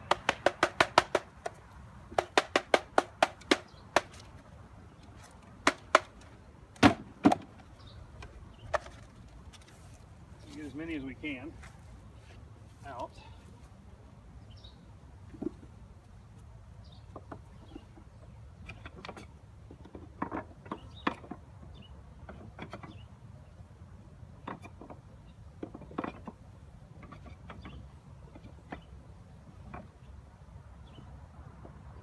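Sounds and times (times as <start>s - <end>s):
package knocking and clunking: 0.0s - 4.4s, 5.6s - 7.5s.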